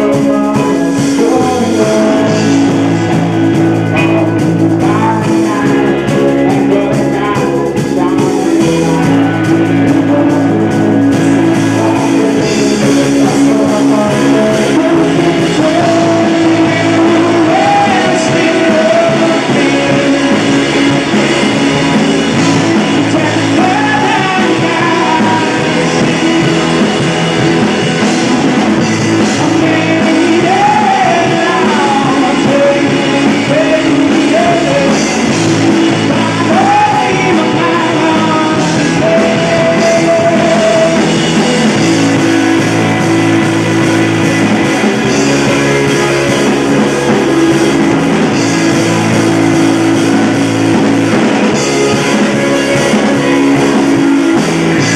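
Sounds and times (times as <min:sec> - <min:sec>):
lead vocal singing: 0:00.0 - 0:54.9
live rock band playing: 0:00.0 - 0:54.9.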